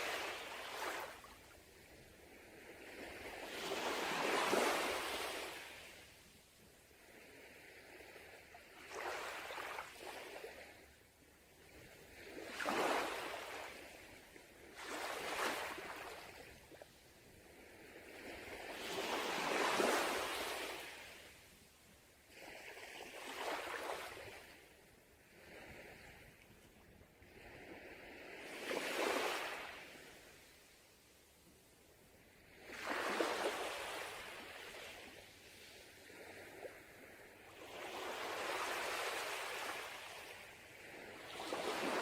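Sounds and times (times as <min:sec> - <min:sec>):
sea waves breaking on beach: 0:00.0 - 0:01.6, 0:02.2 - 0:06.2, 0:11.6 - 0:16.8, 0:17.4 - 0:21.5, 0:27.2 - 0:30.5, 0:32.4 - 0:42.0.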